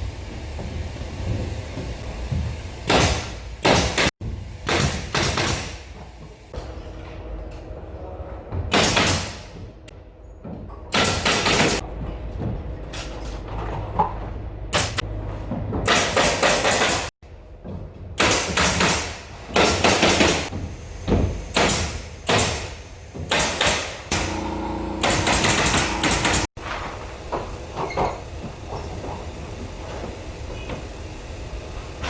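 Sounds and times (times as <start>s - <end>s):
loud noisy carpentry bursts: 1.2s - 6.6s, 8.6s - 9.7s, 10.9s - 11.8s, 14.7s - 15.1s, 15.8s - 17.2s, 18.2s - 28.8s.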